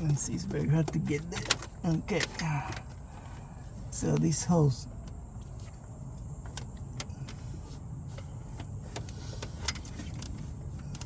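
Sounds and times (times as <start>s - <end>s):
clicks and rattles of plastic parts: 0.0s - 3.4s, 8.2s - 11.0s.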